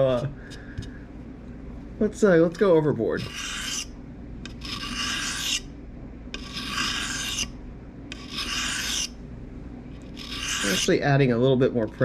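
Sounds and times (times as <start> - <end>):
knife scraping on sharpening stone: 3.2 - 3.9, 4.5 - 5.7, 6.4 - 7.5, 8.1 - 9.2, 10.0 - 10.9.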